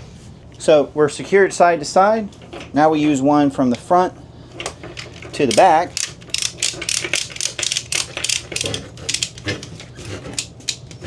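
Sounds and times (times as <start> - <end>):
ratchet strap clicking: 5.0 - 11.0.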